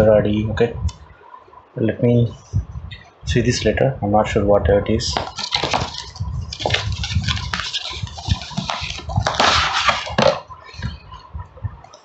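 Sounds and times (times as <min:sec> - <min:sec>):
packaging rustling and crinkling: 0:05.1 - 0:10.5.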